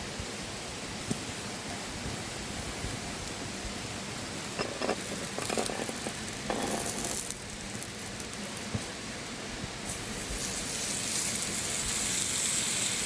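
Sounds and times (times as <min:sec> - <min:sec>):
crackling rustling bursts: 0:01.0 - 0:09.0.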